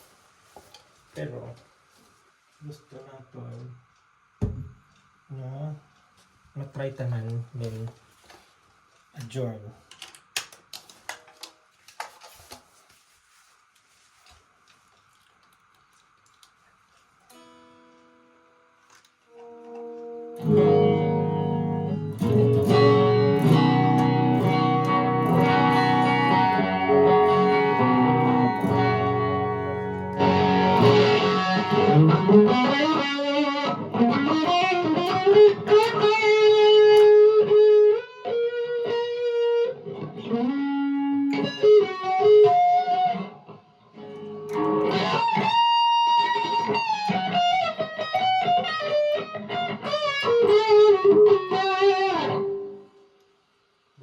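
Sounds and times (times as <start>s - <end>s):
overdriven electric guitar: 17.3s - 53.0s.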